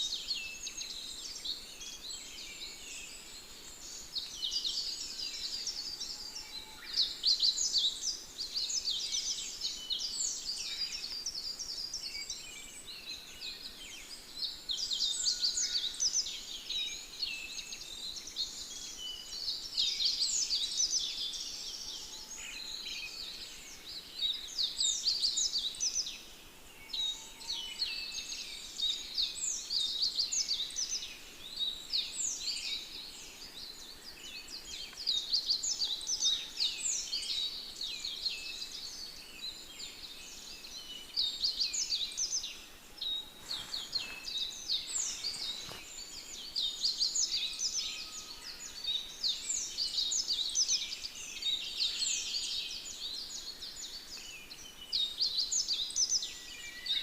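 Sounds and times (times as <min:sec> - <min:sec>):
many small birds chirping: 0:00.0 - 0:57.0.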